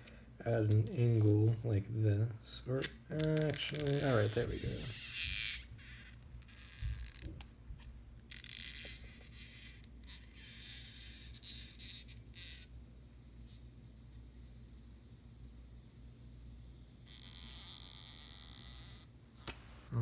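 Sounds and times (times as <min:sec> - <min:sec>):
low steady hum: 0:00.0 - 0:08.3
rustling and scraping of handling: 0:02.7 - 0:08.0.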